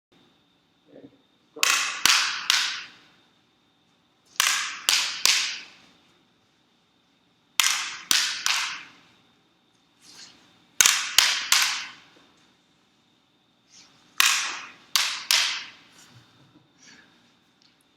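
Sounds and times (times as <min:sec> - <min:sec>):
sticks striking training targets: 0:01.6 - 0:03.1, 0:04.3 - 0:06.0, 0:07.6 - 0:09.1, 0:10.1 - 0:12.2, 0:13.7 - 0:16.1.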